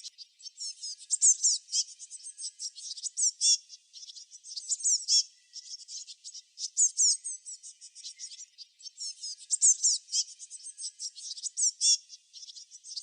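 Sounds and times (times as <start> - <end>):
small songbirds chirping: 0.0 - 13.0.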